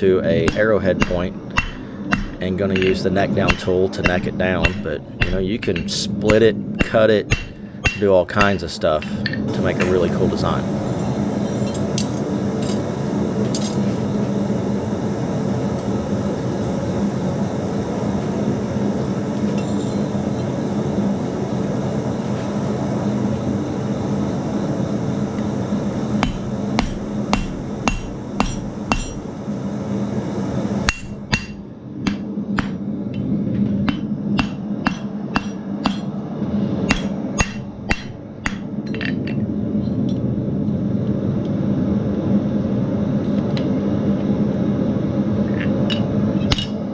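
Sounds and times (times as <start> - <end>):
hammer blows on steel anvil: 0.0 - 11.7, 26.2 - 29.3, 30.9 - 32.8, 33.8 - 36.2, 36.9 - 38.8
steady hum: 0.0 - 13.4, 21.1 - 46.9.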